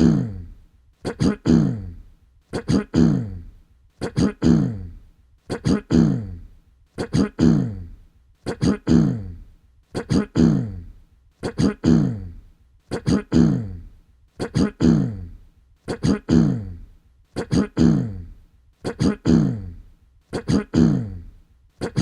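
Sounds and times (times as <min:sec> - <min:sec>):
person clearing throat: 0:00.0 - 0:22.0.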